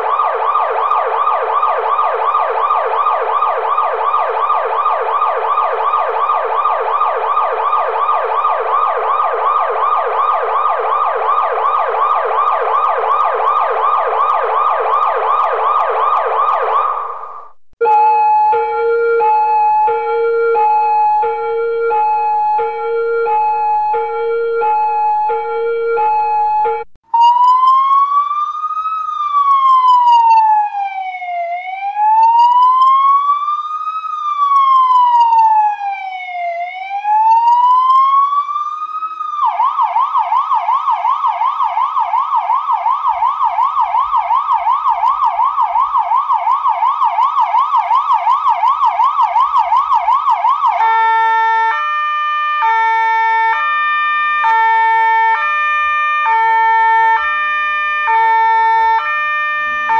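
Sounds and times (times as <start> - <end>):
electronic police siren: 0.0 - 59.9.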